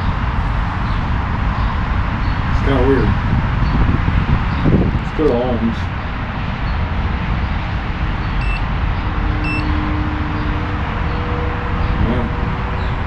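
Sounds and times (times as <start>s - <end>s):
low rumbling background noise: 0.0s - 13.0s
multimeter beeps: 8.4s - 8.7s, 9.4s - 9.8s.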